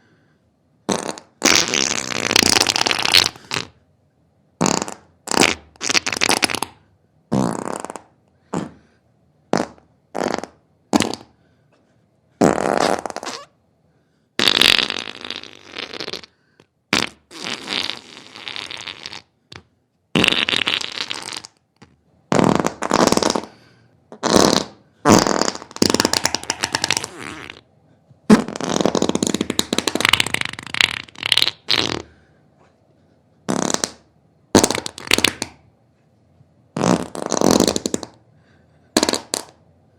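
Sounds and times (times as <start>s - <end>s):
fart sounds: 0.9s - 3.8s, 4.6s - 8.9s, 9.5s - 11.4s, 12.4s - 13.6s, 14.4s - 27.7s, 28.3s - 32.2s, 33.5s - 35.6s, 36.8s - 38.2s, 39.0s - 39.6s.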